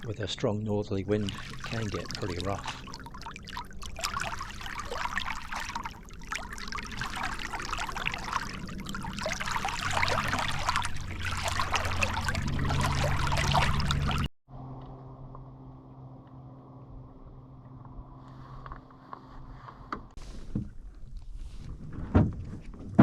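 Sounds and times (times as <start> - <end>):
oar splashes: 0.0 - 14.3
water dribbling off oars: 0.0 - 14.3
low steady hum: 0.0 - 18.3.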